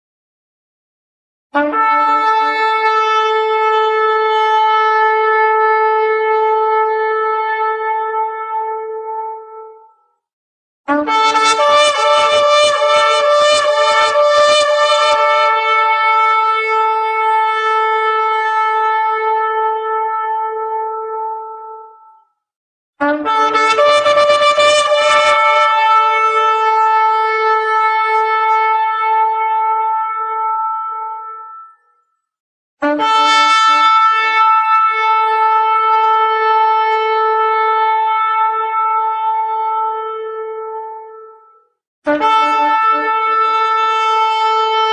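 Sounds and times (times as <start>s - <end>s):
shofar blown: 1.6s - 9.9s, 10.9s - 22.1s, 23.0s - 31.8s, 32.8s - 44.9s.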